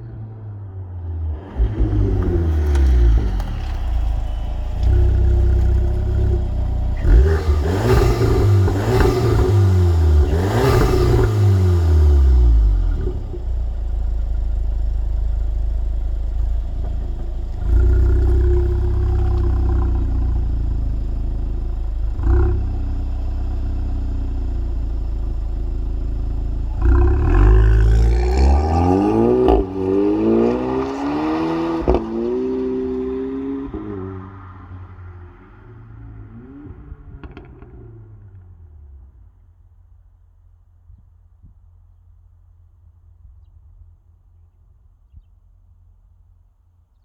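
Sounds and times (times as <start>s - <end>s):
car engine revving: 0.0s - 39.2s
exhaust cracks: 1.1s - 33.8s.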